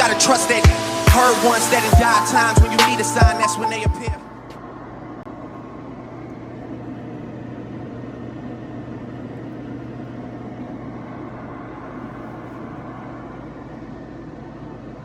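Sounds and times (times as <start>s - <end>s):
even hiss: 0.0s - 3.4s
steady low hum: 0.0s - 15.0s.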